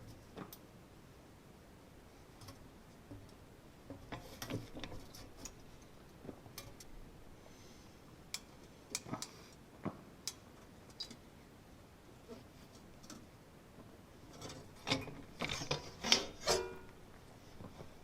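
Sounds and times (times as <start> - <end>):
faint clicks and light knocks: 8.3 - 11.2.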